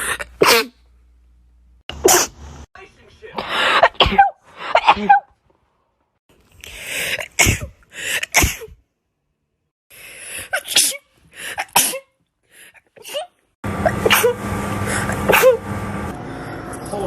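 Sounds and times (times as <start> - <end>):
person sneezing: 0.0 - 0.8, 2.0 - 2.4, 3.4 - 5.3, 7.1 - 8.8, 10.5 - 12.1, 14.0 - 14.4.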